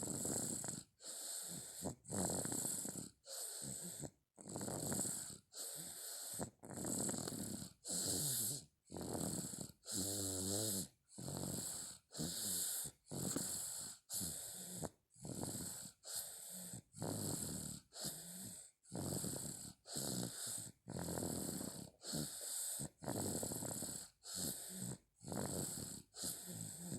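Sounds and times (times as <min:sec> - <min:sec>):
boy snoring: 0:00.0 - 0:26.9.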